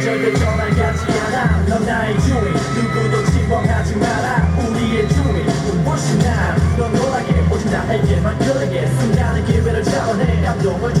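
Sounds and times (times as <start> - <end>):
pop dance song with vocals: 0.0 - 11.0.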